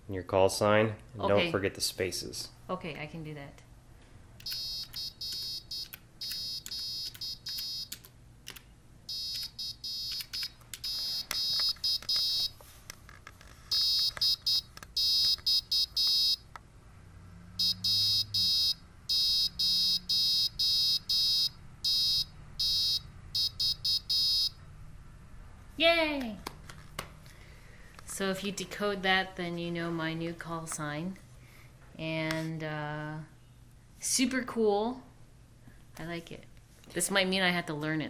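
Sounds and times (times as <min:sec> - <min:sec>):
morse code beeps: 0:04.5 - 0:08.0, 0:09.1 - 0:12.6, 0:13.7 - 0:16.4, 0:17.6 - 0:24.6.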